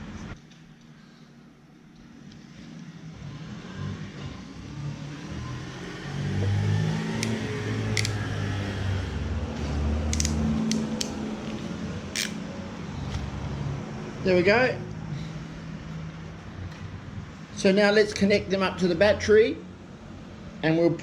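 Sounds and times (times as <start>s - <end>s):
sharp clicks: 7.2s - 8.3s, 10.1s - 11.2s.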